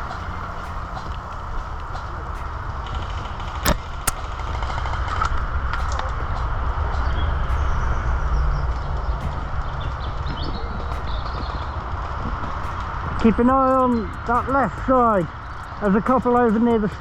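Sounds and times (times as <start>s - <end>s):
sharp snaps: 0.0s - 4.6s
camera handling rumble: 2.8s - 4.5s.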